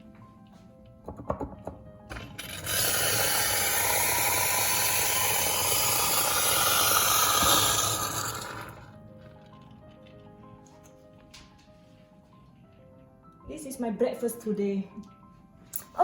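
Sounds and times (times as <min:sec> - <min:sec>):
hot water running into a cup: 0:02.1 - 0:09.0.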